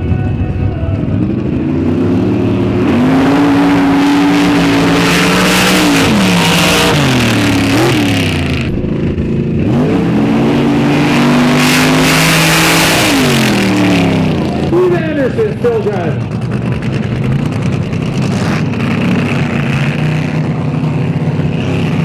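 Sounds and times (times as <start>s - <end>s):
racing engine revving hard: 1.2s - 22.0s.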